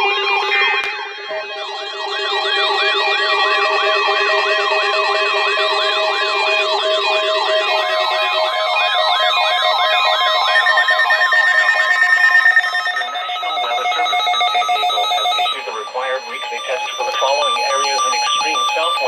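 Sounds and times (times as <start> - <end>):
electronic siren sweeping: 0.0 - 19.0
on-off beeping: 10.5 - 19.0
steady alert tones: 12.6 - 19.0.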